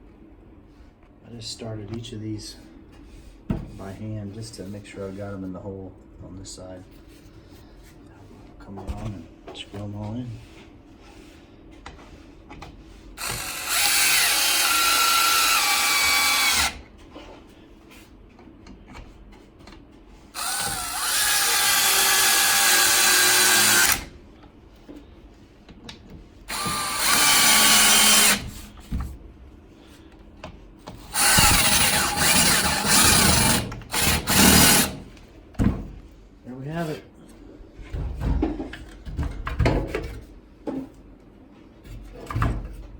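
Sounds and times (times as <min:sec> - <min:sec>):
cordless drill driving screws: 0:13.2 - 0:16.8, 0:20.4 - 0:24.1, 0:26.5 - 0:28.5, 0:31.0 - 0:35.0.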